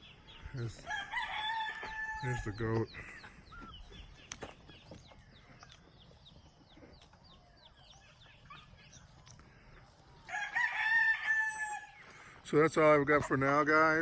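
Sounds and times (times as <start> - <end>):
birds chirping: 0.0 - 14.0
rooster crowing: 0.8 - 2.6, 10.3 - 12.0.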